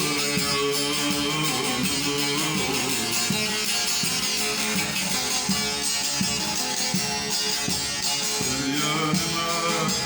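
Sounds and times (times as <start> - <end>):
person singing: 0.0 - 5.5, 8.4 - 10.0
plucked string instrument: 0.0 - 10.0.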